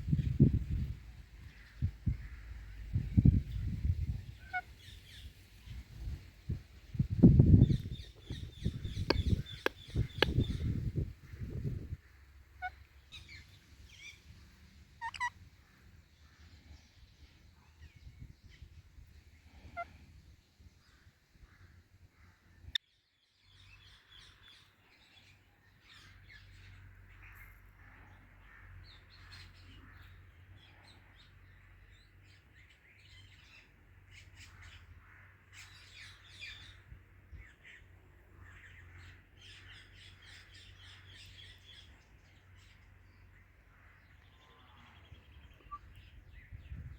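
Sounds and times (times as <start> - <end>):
birds chirping: 6.5 - 12.0, 15.0 - 18.7
sharp click: 8.9 - 10.6.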